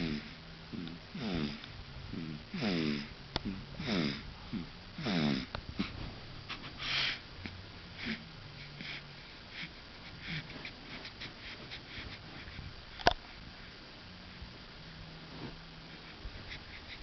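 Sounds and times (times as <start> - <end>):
baby snoring: 0.0 - 5.9, 8.0 - 12.6
breathy breath: 5.8 - 7.3, 7.9 - 13.8.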